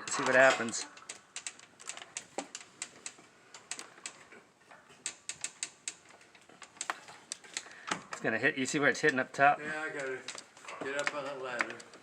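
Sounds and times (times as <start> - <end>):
door hinge and spring clicking: 0.0 - 8.3.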